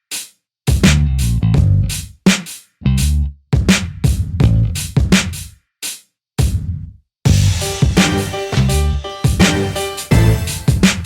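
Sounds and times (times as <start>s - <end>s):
music with drum beat: 0.0s - 2.7s, 3.6s - 11.0s
sustained melody: 7.3s - 11.0s.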